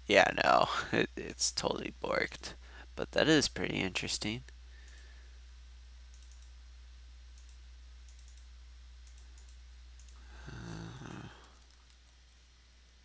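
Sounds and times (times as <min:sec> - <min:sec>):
low electrical hum: 0:00.0 - 0:13.0
computer mouse clicks: 0:06.1 - 0:06.5, 0:07.4 - 0:10.2
person humming: 0:10.3 - 0:11.6.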